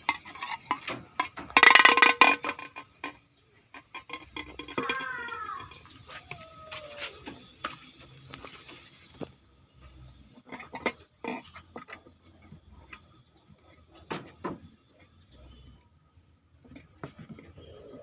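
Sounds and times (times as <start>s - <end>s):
small hard objects clicking and knocking: 0.0s - 15.8s.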